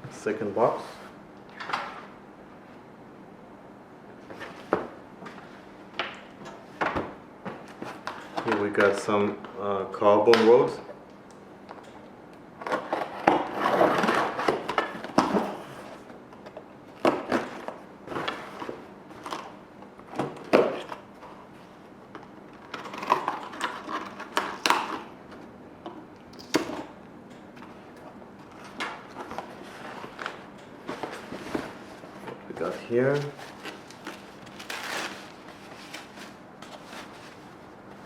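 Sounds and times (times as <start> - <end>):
packaging rustling: 28.5 - 38.0.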